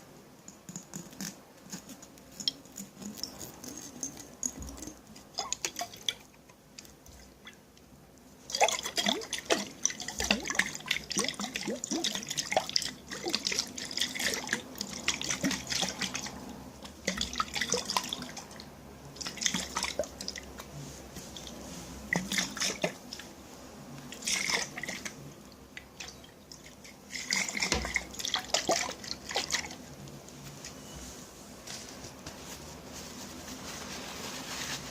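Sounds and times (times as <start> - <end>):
water splashing in a container: 4.4 - 7.6, 8.5 - 20.7, 21.3 - 23.3, 24.1 - 30.0.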